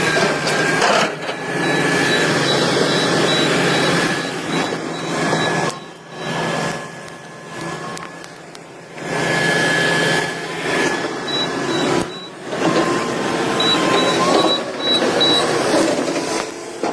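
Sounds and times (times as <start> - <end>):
heavy machinery whirring: 0.0 - 16.9
rapid high beeping: 1.4 - 6.7, 11.3 - 15.6.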